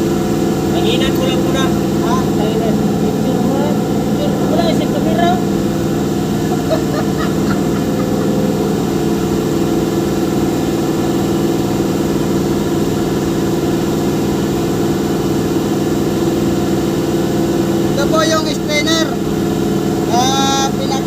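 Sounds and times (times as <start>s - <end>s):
hydraulic machine engine running: 0.0s - 21.0s.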